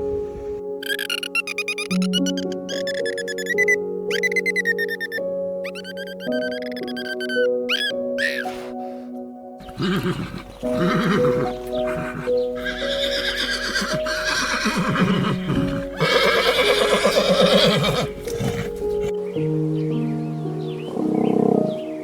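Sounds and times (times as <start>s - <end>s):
background music with held notes: 0.0s - 22.0s
animal calls: 0.8s - 8.8s, 9.6s - 19.2s.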